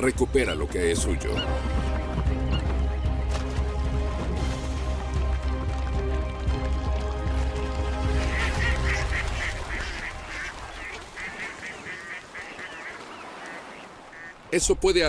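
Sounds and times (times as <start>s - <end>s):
eagles piping calls: 0.0s - 3.2s, 8.1s - 14.4s
music: 0.0s - 10.9s.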